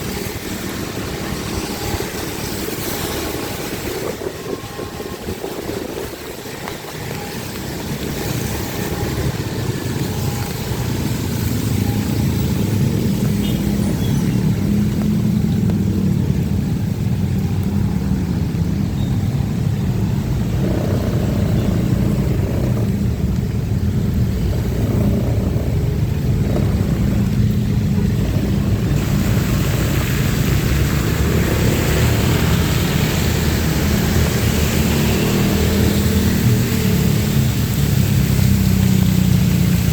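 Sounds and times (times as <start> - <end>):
tyre noise on wet road: 0.0 - 39.9
motorcycle engine running: 20.2 - 39.9.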